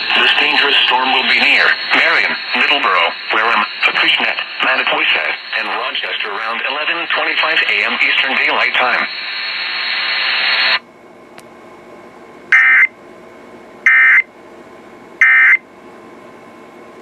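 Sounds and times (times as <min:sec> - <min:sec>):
radio hiss: 0:00.0 - 0:10.8.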